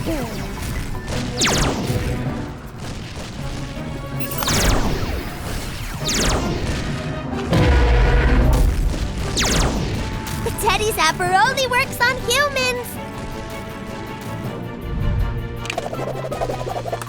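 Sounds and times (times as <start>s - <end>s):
background music: 0.0s - 17.0s
low boom: 7.5s - 10.3s.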